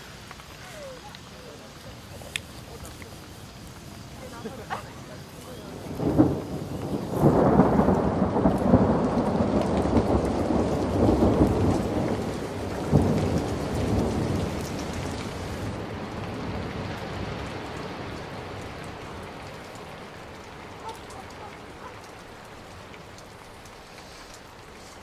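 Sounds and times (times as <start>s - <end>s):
steady rain: 0.0s - 25.0s
thunder peal: 5.8s - 15.8s.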